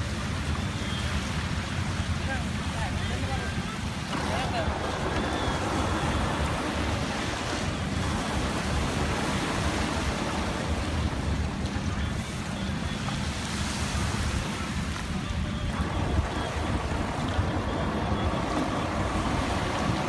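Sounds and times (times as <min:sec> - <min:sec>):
sea waves rushing: 0:00.0 - 0:20.0
wind buffeting microphone: 0:00.0 - 0:20.0.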